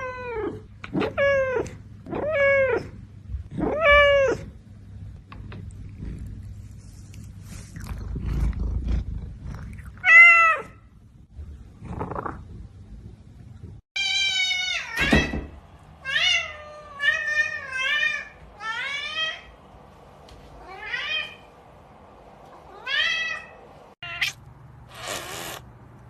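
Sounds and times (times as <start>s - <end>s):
kitten meowing: 24.0s - 25.6s.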